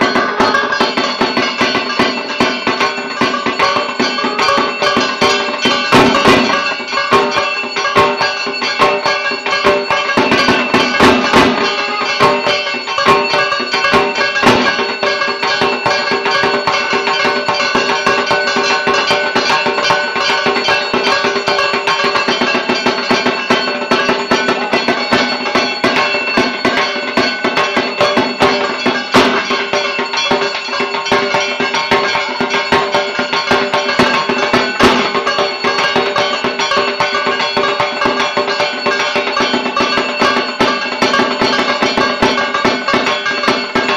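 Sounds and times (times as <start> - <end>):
barrel drum beaten with sticks: 0.0 - 43.9.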